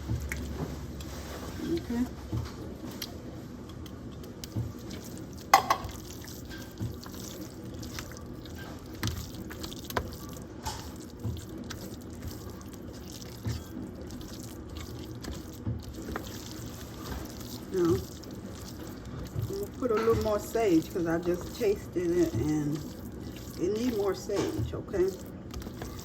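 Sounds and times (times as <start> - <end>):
spoon mashing wet food: 0.0 - 26.0
spoon clacking on dish: 5.5 - 6.0.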